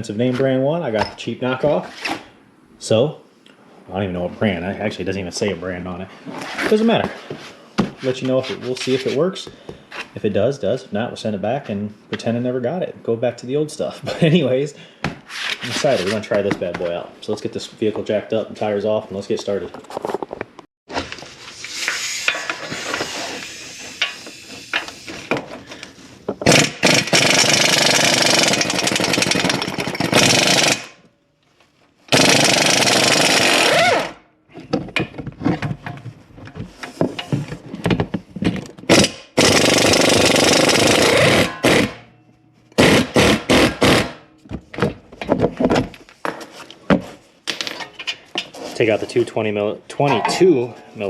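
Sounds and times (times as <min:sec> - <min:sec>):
impact wrench hammering: 0:26.4 - 0:31.0, 0:32.1 - 0:34.1, 0:38.9 - 0:42.1, 0:42.8 - 0:44.2.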